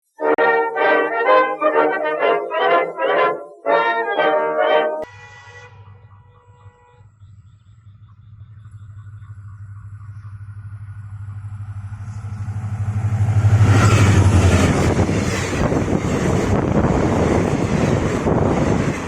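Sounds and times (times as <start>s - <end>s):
diesel locomotive engine hum: 5.0s - 19.0s
train rushing clatter: 9.0s - 19.0s.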